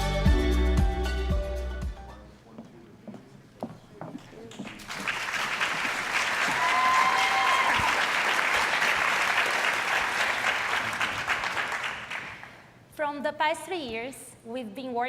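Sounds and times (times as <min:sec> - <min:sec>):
audience applauding: 0:04.5 - 0:12.6.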